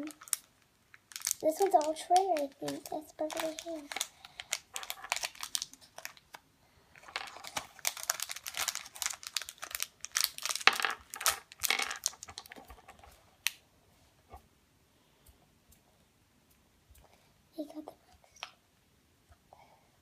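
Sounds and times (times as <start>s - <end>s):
plastic packaging crinkling and tearing: 0.0s - 6.4s, 7.0s - 13.1s.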